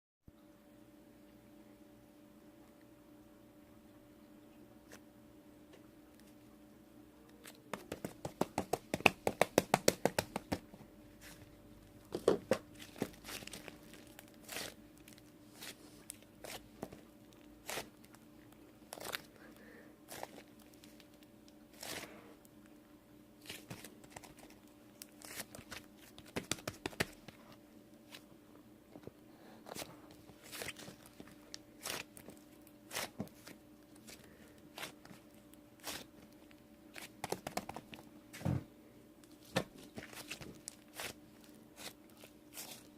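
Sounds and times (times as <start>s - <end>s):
faint steady hum: 0.2s - 42.9s
sharp clicks and taps: 7.7s - 10.7s
crinkling: 11.2s - 22.2s, 23.4s - 28.2s, 28.9s - 38.5s, 39.2s - 42.9s.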